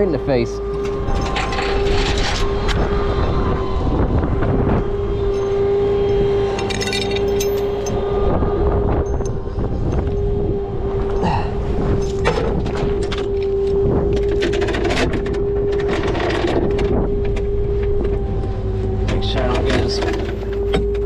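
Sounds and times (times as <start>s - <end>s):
truck engine whine: 0.0s - 21.0s
metal chains clinking: 5.4s - 8.1s.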